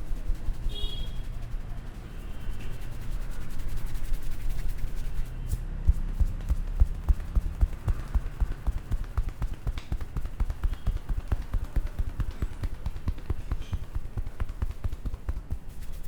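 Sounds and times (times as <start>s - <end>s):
percussive massage thumps: 5.8s - 16.0s.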